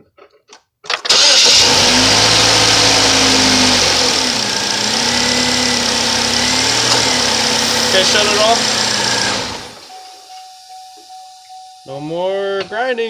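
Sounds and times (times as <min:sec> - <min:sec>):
car engine idling: 0:01.1 - 0:10.4.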